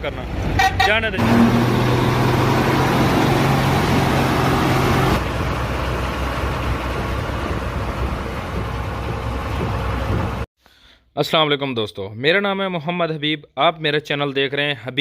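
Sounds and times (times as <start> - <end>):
diesel truck engine running: 0.2 - 10.5.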